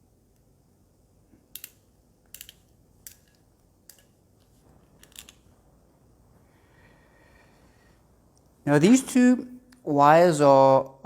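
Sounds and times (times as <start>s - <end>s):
hand crimper clicks: 1.5s - 4.1s.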